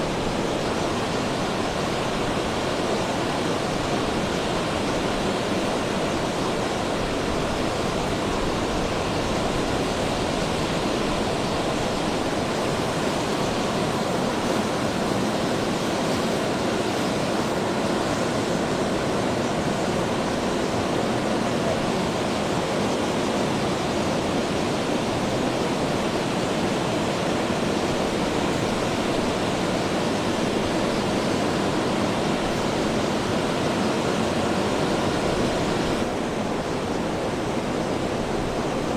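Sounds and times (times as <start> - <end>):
heavy rain: 27.3 - 38.9.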